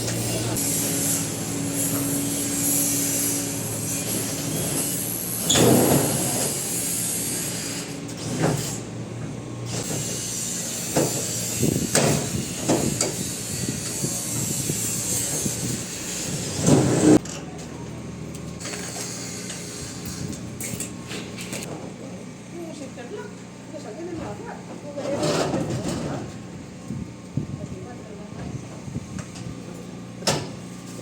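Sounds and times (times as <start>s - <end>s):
metal garage door clanking: 0.0s - 13.3s.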